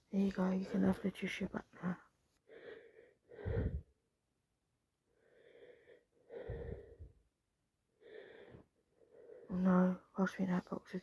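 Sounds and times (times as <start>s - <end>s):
woman breathing through congested nose: 2.4s - 4.0s, 5.1s - 7.2s, 8.0s - 9.5s.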